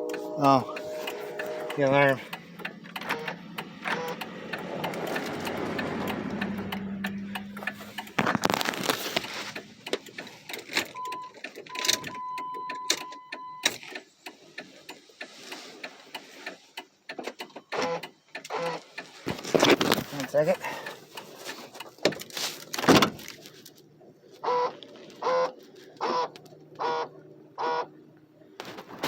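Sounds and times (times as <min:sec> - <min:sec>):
broken beeping tone: 0:00.0 - 0:05.0.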